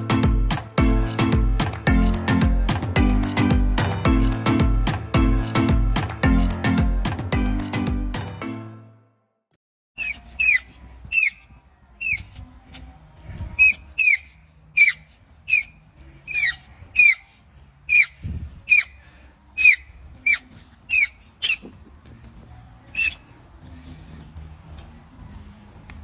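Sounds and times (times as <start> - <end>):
animal squeaky calls: 10.0 - 12.3, 13.6 - 19.0, 19.6 - 21.7, 22.9 - 23.3.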